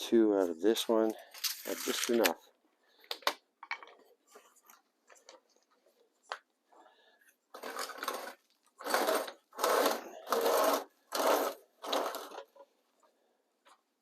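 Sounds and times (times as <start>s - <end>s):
hand saw cutting wood: 7.6s - 12.5s.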